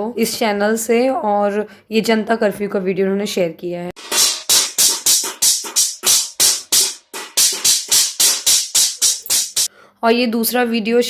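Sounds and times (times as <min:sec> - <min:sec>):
music with fast percussive beat: 0:04.0 - 0:09.7.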